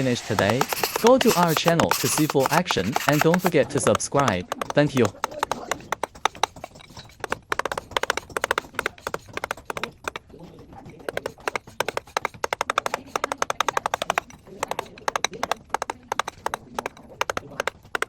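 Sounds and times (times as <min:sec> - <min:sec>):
hammer striking chisel into stone: 0:00.0 - 0:18.0.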